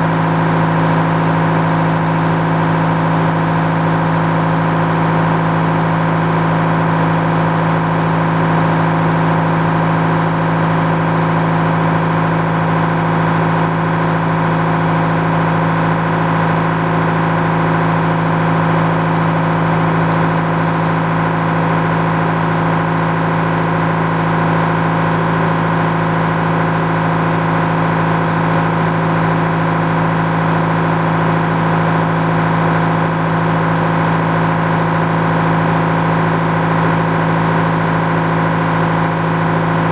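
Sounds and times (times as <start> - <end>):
sawmill engine humming: 13.3 - 37.8.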